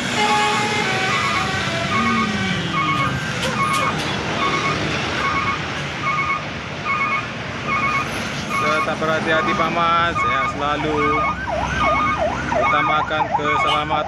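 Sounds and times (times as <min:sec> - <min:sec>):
bus musical horn beeping: 0:00.0 - 0:05.6
bus engines: 0:00.0 - 0:14.0
traffic passing: 0:00.0 - 0:14.0.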